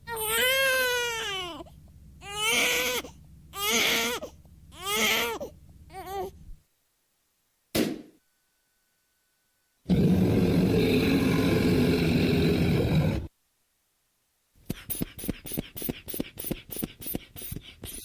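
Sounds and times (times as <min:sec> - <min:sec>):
baby crying: 0:00.0 - 0:06.4.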